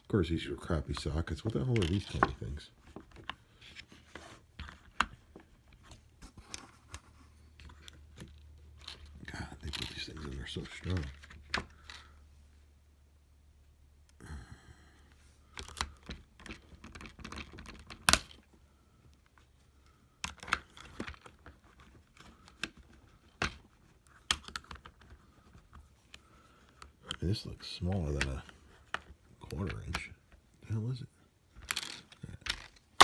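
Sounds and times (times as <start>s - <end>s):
screwdriver bits clicking in plastic case: 15.6s - 18.4s.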